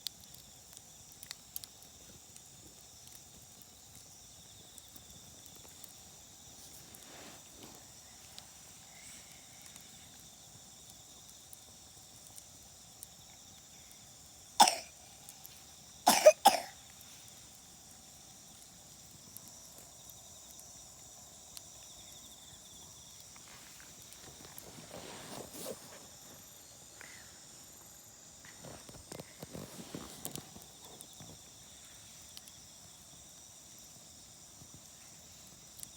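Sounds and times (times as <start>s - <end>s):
campfire crackling: 0.0s - 35.9s
person coughing: 14.6s - 14.9s, 16.1s - 16.7s.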